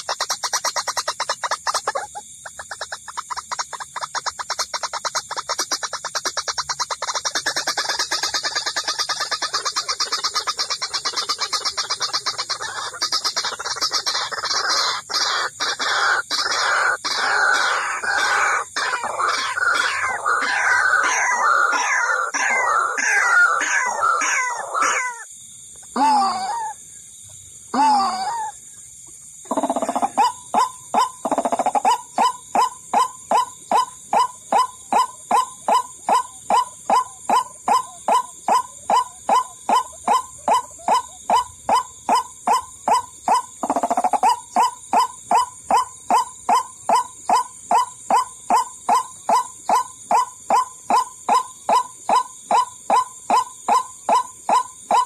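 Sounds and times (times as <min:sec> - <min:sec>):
waterhen calls: 0:00.0 - 0:25.3, 0:29.5 - 0:55.0
steady high hiss: 0:26.7 - 0:27.8.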